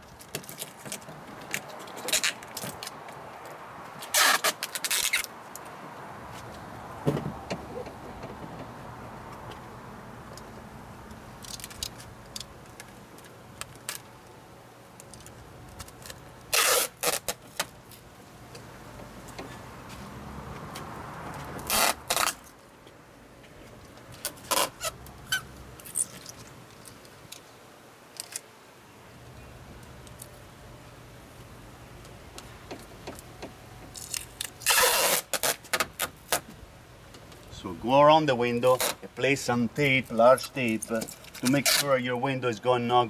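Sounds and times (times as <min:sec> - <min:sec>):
adhesive tape ripping off roll: 0:04.0 - 0:05.4, 0:15.7 - 0:17.7, 0:21.6 - 0:22.6, 0:24.2 - 0:26.4, 0:34.0 - 0:36.4, 0:38.8 - 0:39.1, 0:41.0 - 0:41.9
light clicks and handling noise: 0:10.3 - 0:14.4, 0:15.0 - 0:16.3, 0:39.8 - 0:42.0.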